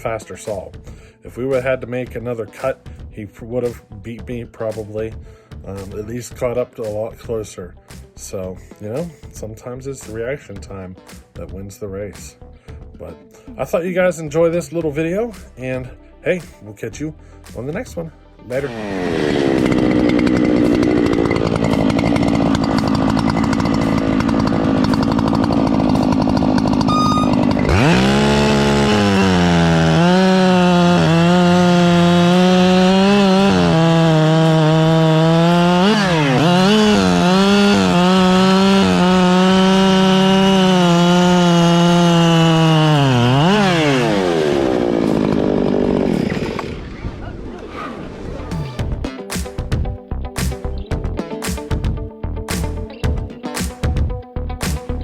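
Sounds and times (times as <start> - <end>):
chainsaw engine revving: 18.5 - 49.0.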